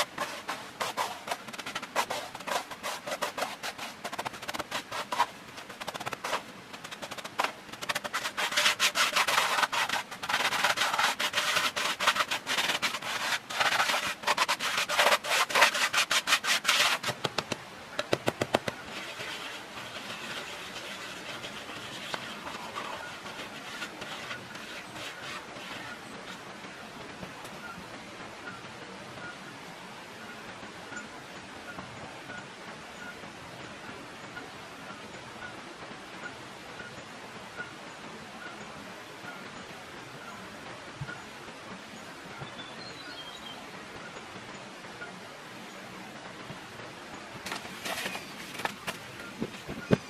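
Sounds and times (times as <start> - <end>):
hands scraping in soil: 0.0 - 26.4, 47.5 - 50.0
faint steady hiss: 0.0 - 50.0.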